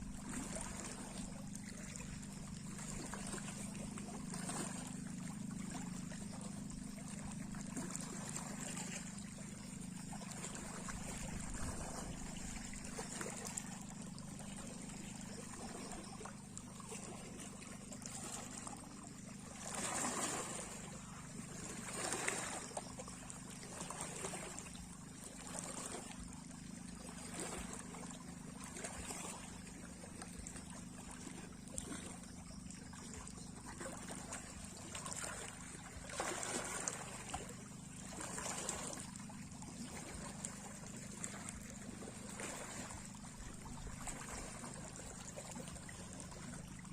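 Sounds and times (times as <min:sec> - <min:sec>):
small waves lapping: 0:00.0 - 0:46.9
steady low hum: 0:00.0 - 0:46.9.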